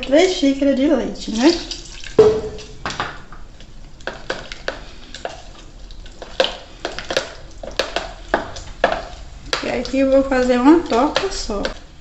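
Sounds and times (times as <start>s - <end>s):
utensils knocking on kitchenware: 2.2s - 2.9s.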